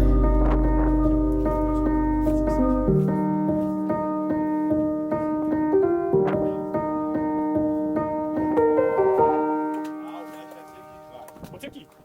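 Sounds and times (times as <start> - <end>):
low bass line: 0.0 - 3.5
piano playing repeated notes: 0.0 - 11.6.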